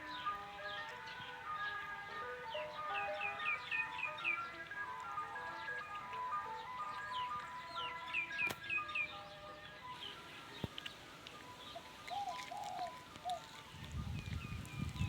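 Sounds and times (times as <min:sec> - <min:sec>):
background music: 0:00.0 - 0:15.0
birds chirping: 0:00.0 - 0:15.0
dove cooing: 0:09.9 - 0:15.0.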